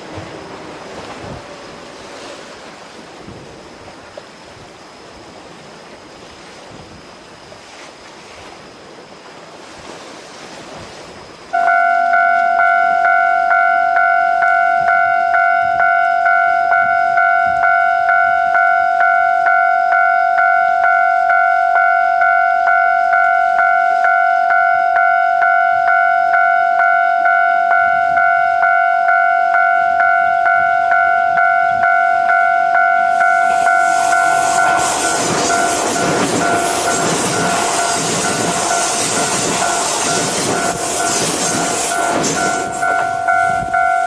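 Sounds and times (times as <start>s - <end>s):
surf: 0.0s - 27.0s, 27.6s - 44.0s
wind: 0.0s - 44.0s
level-crossing alarm dinging: 11.5s - 44.0s.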